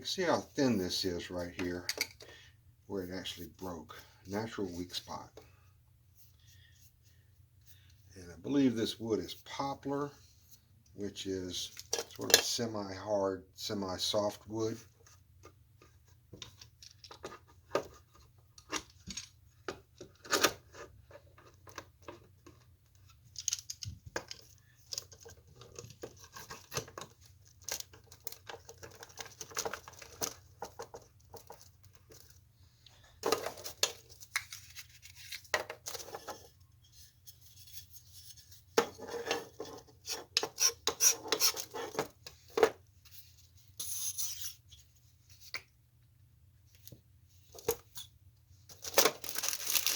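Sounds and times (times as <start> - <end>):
wood and tools clicking and knocking: 15.4 - 32.4.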